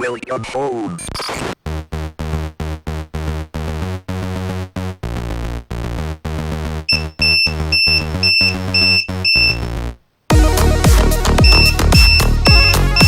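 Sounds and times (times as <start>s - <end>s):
pulsing synthesizer chords: 1.7s - 13.0s
high bleeping synth line: 6.9s - 9.7s, 11.4s - 13.0s.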